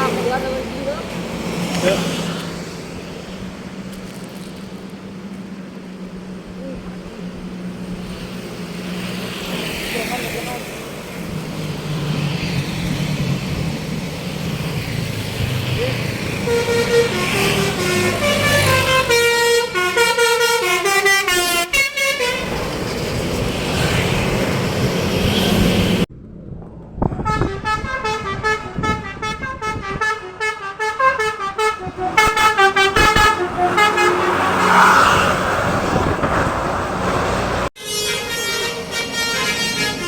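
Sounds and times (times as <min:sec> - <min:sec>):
bus horns playing fast tunes: 0:16.4 - 0:22.8, 0:27.1 - 0:35.0, 0:37.8 - 0:40.0.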